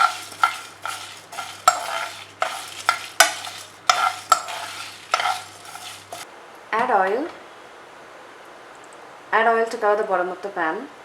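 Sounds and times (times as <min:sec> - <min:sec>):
dry seeds rustling: 0:00.0 - 0:06.3
utensil scraping a pan: 0:00.0 - 0:06.3.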